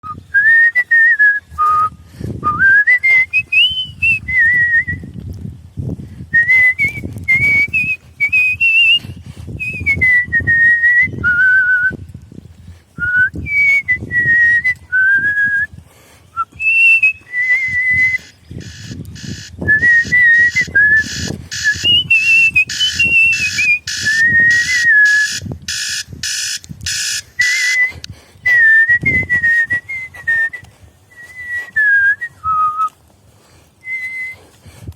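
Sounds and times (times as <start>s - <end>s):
person whistling a tune: 0.0s - 5.1s, 6.3s - 12.0s, 13.0s - 15.7s, 16.4s - 18.3s, 19.6s - 25.4s, 27.4s - 33.0s, 33.8s - 34.5s.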